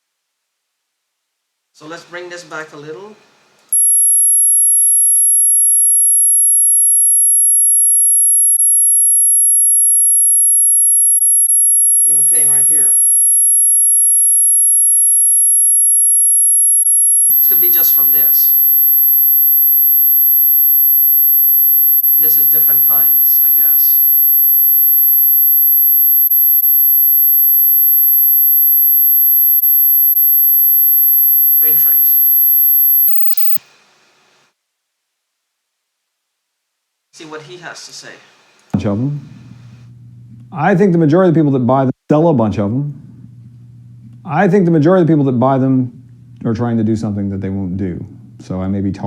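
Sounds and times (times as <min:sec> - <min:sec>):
high-pitched pure tone: 0:03.8 - 0:33.6.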